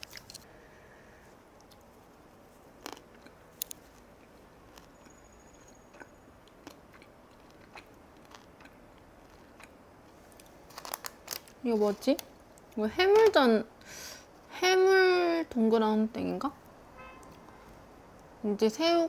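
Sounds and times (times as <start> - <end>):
person chewing: 2.7 - 11.5.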